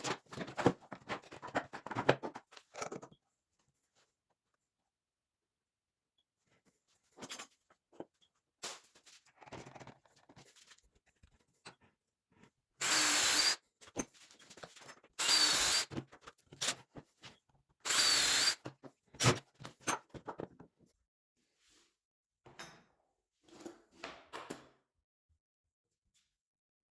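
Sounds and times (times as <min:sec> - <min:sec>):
power drill motor whining: 0:12.8 - 0:13.6, 0:15.2 - 0:16.0, 0:17.9 - 0:18.6.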